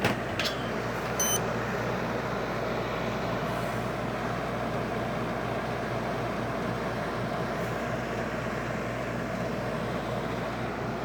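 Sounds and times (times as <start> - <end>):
air conditioner running: 0.0 - 11.0
short electronic beep: 1.2 - 1.4.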